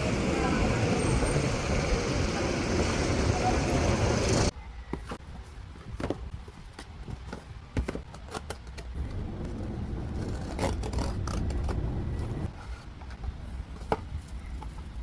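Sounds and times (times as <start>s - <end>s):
steady low rumble: 0.0s - 4.5s, 9.0s - 12.5s.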